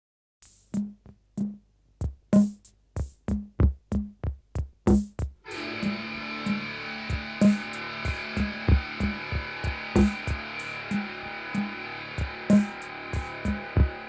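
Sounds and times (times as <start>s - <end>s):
drum beat: 0.4s - 14.0s
sustained guitar chords: 5.5s - 14.0s.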